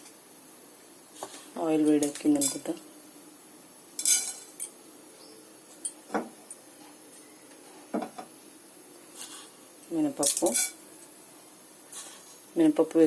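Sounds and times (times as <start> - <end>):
metal utensils clinking on pan: 2.0 - 2.8, 4.0 - 4.8, 10.2 - 10.8.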